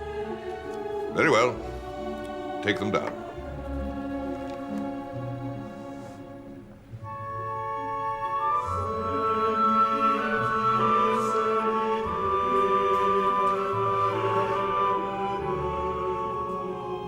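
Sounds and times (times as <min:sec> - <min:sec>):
orchestral music with choir: 0:00.0 - 0:17.0.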